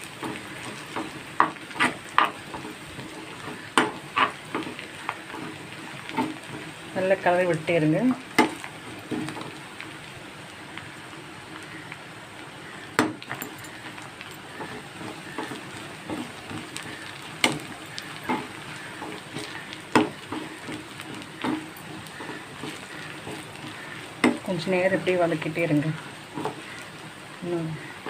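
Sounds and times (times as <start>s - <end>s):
battered food sizzling in oil: 0.0s - 28.0s
spatula knocking on pan: 0.2s - 4.8s, 14.6s - 24.5s.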